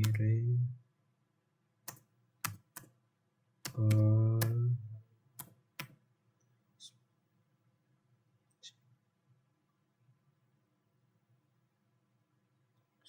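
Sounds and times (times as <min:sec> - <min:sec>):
keyboard key clicks: 0:01.9 - 0:02.9.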